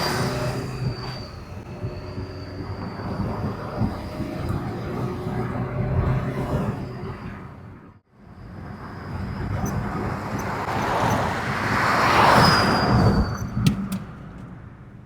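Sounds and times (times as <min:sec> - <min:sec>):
thin high exhaust whistle: 0:00.0 - 0:03.9, 0:12.1 - 0:13.9.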